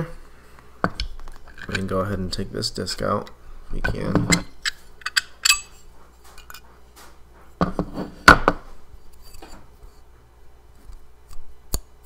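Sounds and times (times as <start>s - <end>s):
metal parts knocking and clinking: 3.9s - 5.8s.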